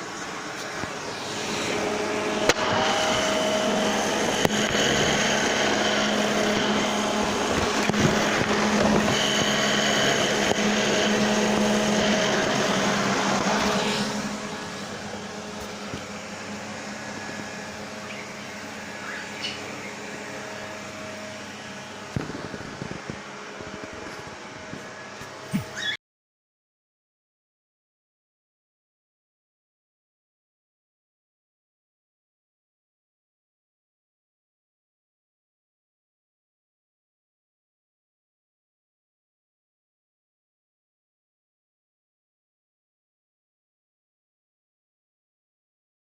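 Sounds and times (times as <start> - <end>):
vacuum cleaner running: 0.0 - 26.0.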